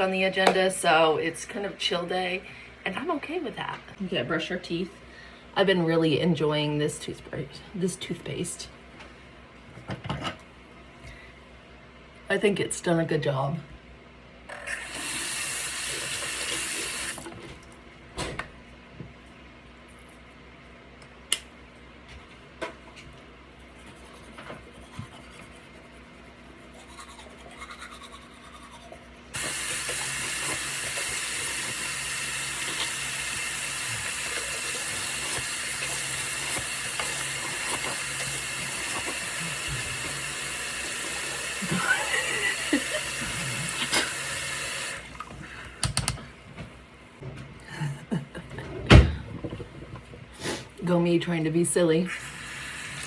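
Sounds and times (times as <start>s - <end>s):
faucet running: 14.7s - 17.3s, 29.4s - 45.3s, 52.2s - 53.0s.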